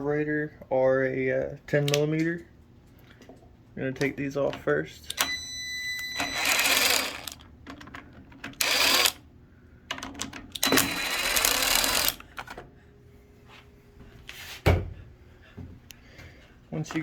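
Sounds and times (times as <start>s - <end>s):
socket ratchet clicking: 8.6s - 9.2s.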